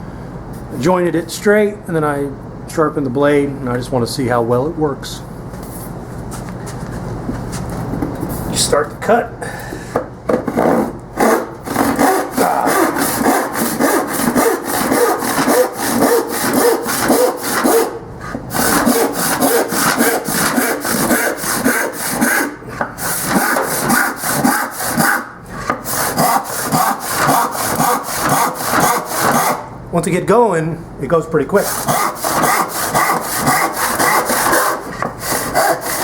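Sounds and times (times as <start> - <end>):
hand saw cutting wood: 10.4 - 29.7, 31.6 - 36.0.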